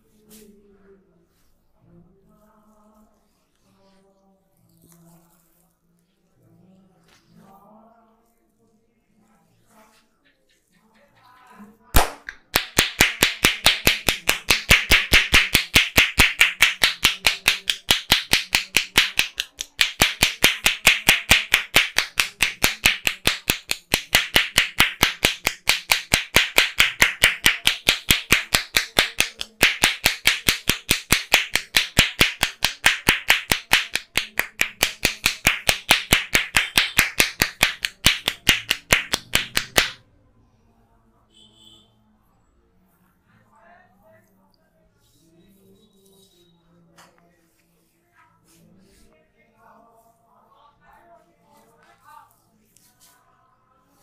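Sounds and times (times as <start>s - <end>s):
rapid hand claps on head: 12.0s - 40.0s.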